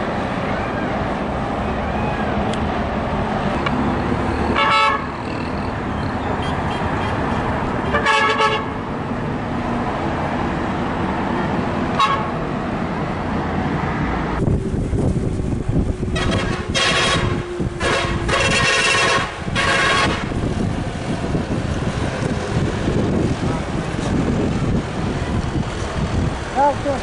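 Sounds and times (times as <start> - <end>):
engine and traffic rumble: 0.0 - 27.0
bus horn blasts: 4.5 - 5.5, 7.8 - 8.8, 11.9 - 12.4, 16.0 - 20.4.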